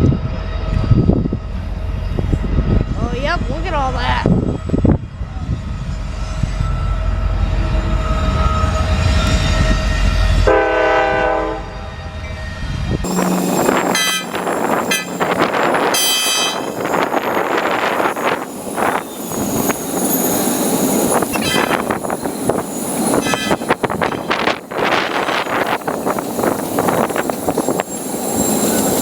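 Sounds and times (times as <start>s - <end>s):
diesel locomotive rumbling: 0.0s - 29.0s
railcars clattering past: 0.0s - 29.0s
train horn: 7.1s - 12.2s, 13.1s - 16.8s, 23.2s - 24.4s
high wheel squeals: 12.0s - 29.0s.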